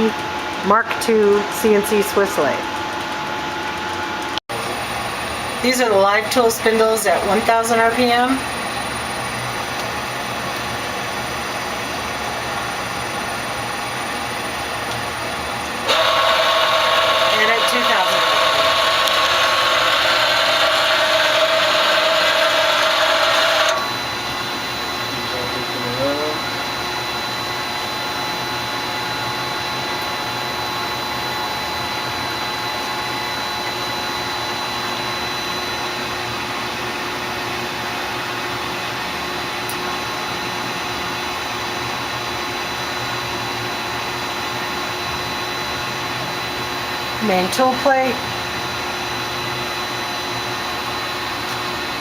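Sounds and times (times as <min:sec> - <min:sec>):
lathe spindles whining: 0:00.0 - 0:52.0
idling machine hum: 0:04.6 - 0:35.7.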